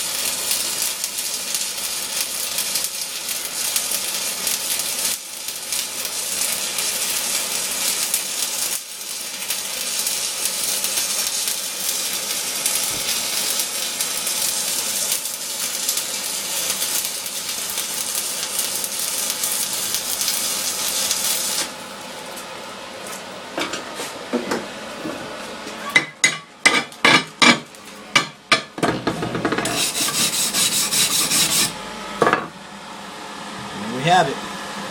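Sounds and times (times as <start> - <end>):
welding arc crackling: 0.0 - 22.5, 29.5 - 31.9.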